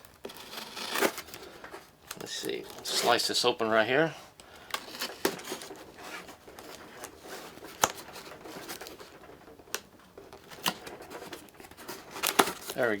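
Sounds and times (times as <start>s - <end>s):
cardboard scraping and rustling: 0.0s - 3.4s, 4.8s - 13.0s
blade slicing tape: 0.2s - 1.3s.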